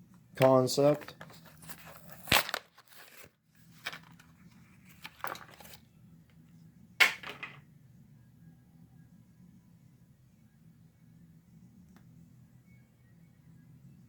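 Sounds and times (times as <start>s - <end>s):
plastic packaging crinkling and tearing: 1.1s - 4.2s.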